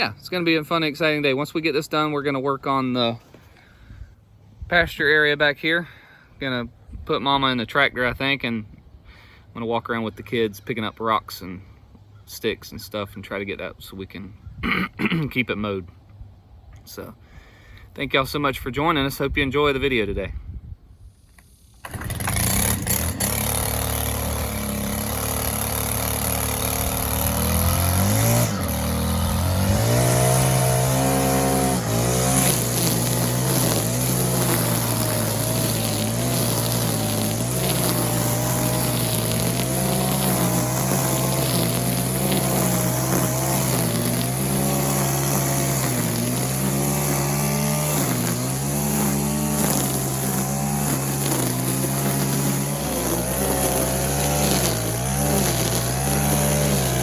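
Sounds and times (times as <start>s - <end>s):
engine running: 21.7s - 57.0s.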